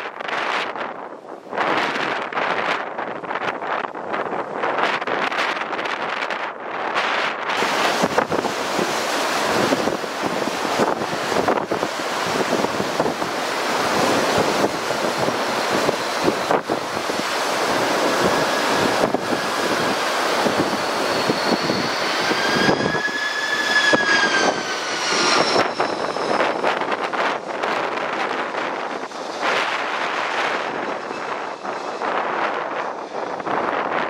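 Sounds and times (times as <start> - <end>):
wind buffeting microphone: 0.0 - 34.0
jet engines whining: 7.5 - 34.0.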